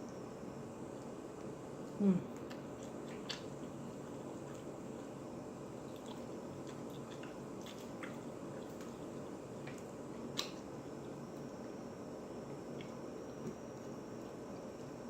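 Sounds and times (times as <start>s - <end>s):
steady background hum: 0.0s - 15.0s
wet chewing: 0.9s - 11.2s.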